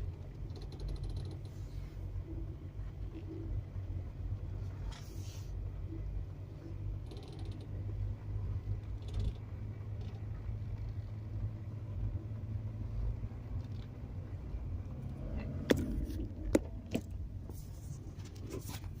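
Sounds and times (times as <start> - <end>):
car suspension creaking: 0.0 - 1.9, 14.9 - 19.0
car low hum: 0.0 - 19.0.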